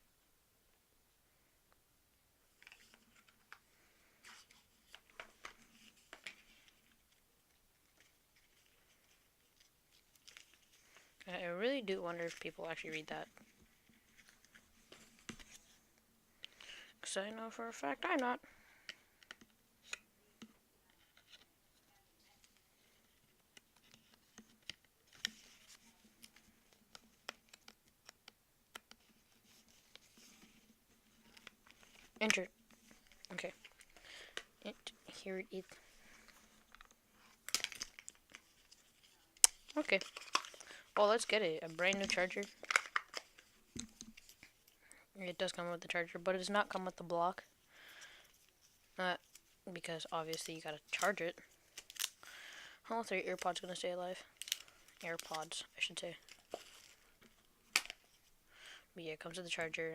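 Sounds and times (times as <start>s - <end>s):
cardboard and paper rustling: 20.9s - 27.8s, 28.8s - 44.8s, 53.0s - 58.3s
light clicks of packaging: 36.2s - 40.7s, 41.9s - 44.6s, 54.4s - 55.6s.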